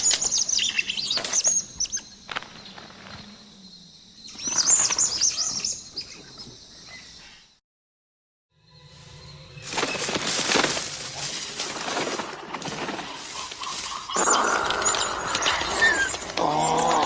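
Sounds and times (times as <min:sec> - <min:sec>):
crackling and rustling with clicks: 0:09.6 - 0:17.0
high dinosaur chattering and squeaking: 0:13.3 - 0:17.0.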